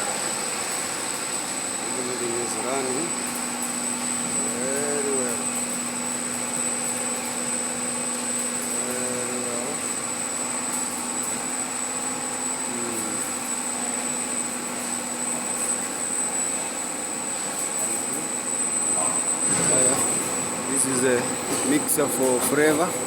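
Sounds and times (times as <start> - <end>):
high-pitched machine whine: 0.0 - 23.0
low machine hum: 0.0 - 23.0
machinery mechanical din: 19.2 - 23.0.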